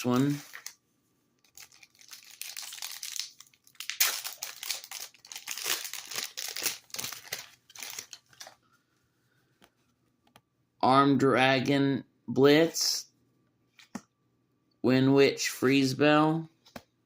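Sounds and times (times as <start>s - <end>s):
foil wrapper tearing and crinkling: 1.4s - 8.5s.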